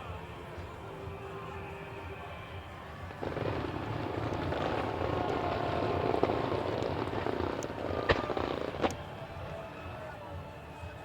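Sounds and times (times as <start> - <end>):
fireworks crackling: 1.6 - 11.0.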